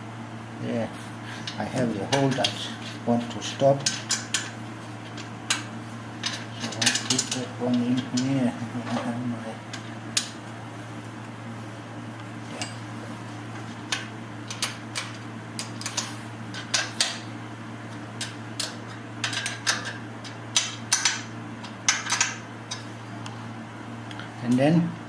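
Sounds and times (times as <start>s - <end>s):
steady low hum: 0.0s - 25.0s
small metal parts clinking: 6.2s - 8.3s.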